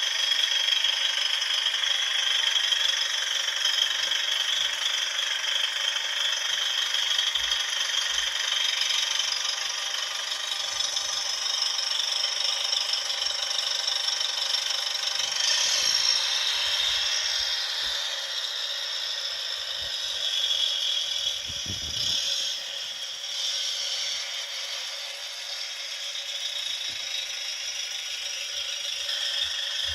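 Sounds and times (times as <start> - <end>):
tinny engine sound from small speaker: 21.4 - 22.6.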